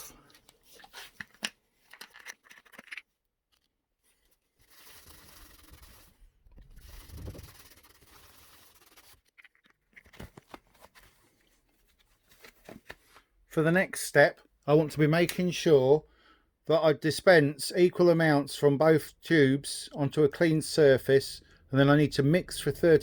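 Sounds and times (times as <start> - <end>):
rubbing and scraping: 4.1 - 11.6.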